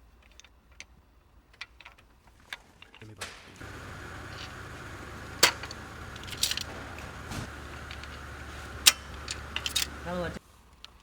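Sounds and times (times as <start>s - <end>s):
low machine hum: 3.6s - 10.4s.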